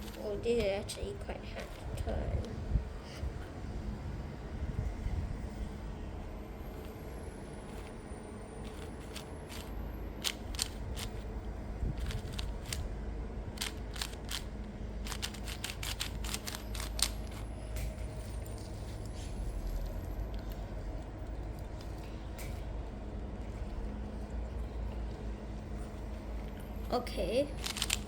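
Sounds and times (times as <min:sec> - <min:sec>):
low steady rumble: 0:00.0 - 0:28.0
puzzle cube clicking: 0:08.7 - 0:11.2, 0:12.0 - 0:12.8, 0:13.6 - 0:17.4, 0:27.6 - 0:28.0.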